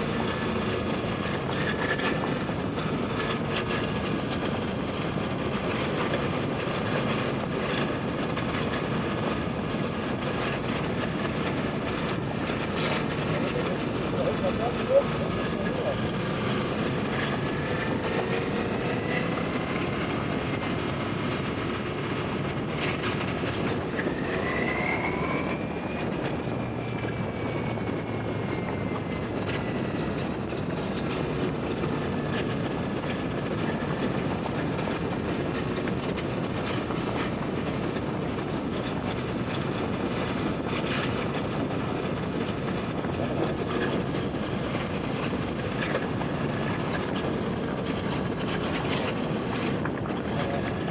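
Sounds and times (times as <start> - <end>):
wind and road noise: 0.0 - 50.9
short rising whine: 23.9 - 30.2.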